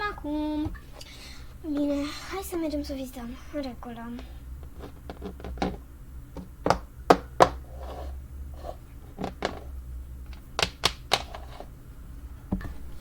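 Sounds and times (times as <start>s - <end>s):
steady low hum: 0.0s - 13.0s
toy figures clacking on hard surface: 10.3s - 11.6s.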